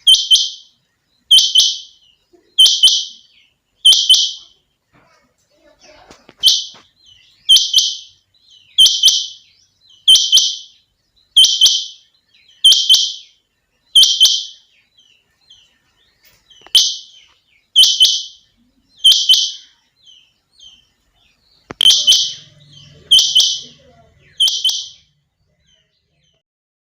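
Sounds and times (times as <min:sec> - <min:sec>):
quail calling: 0:02.6 - 0:03.3, 0:17.8 - 0:18.4, 0:21.7 - 0:25.0.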